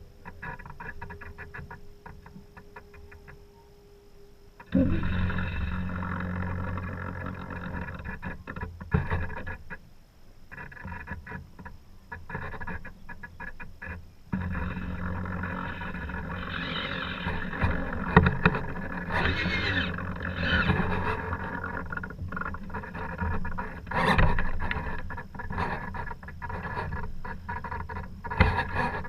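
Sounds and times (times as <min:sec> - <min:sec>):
low hum: 0:00.0 - 0:10.6, 0:11.3 - 0:29.0
deck gear knocking: 0:04.6 - 0:09.6
short squeaks: 0:12.0 - 0:29.0.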